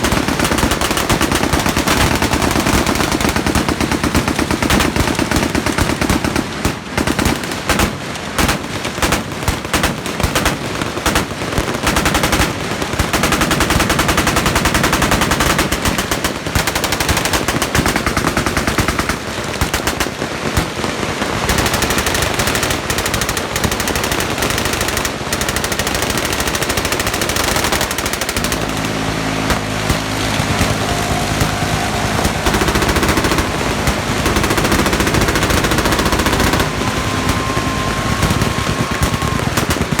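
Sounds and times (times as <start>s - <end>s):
machine guns firing: 0.0s - 40.0s
steady low hum: 28.4s - 40.0s.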